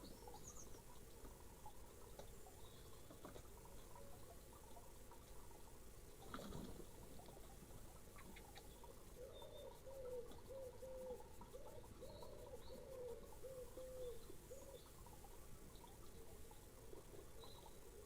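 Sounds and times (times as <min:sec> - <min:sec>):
small birds chirping: 0:00.0 - 0:18.0
pigeon cooing: 0:08.2 - 0:14.9.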